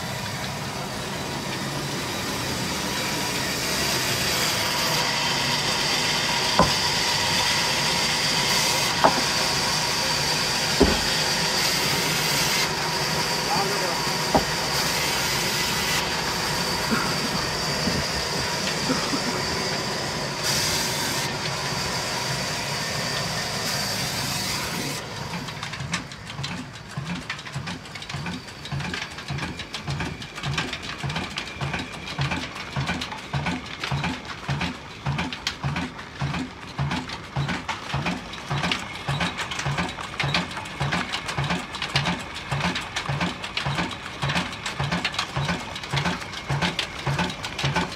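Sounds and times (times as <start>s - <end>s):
diesel engine running: 0.0s - 47.9s
high engine whine: 0.0s - 47.9s.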